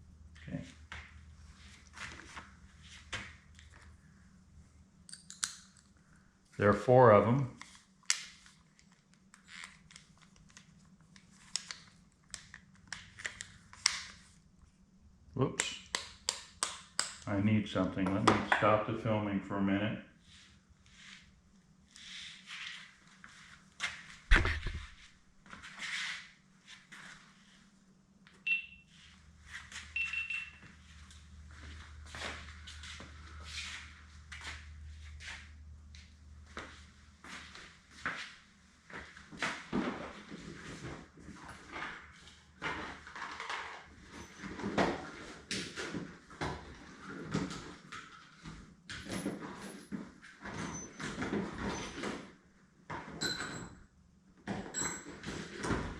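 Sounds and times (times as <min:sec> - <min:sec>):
rustling and scraping: 0:20.2 - 0:27.7
short high beeps: 0:28.5 - 0:28.8, 0:30.0 - 0:30.6.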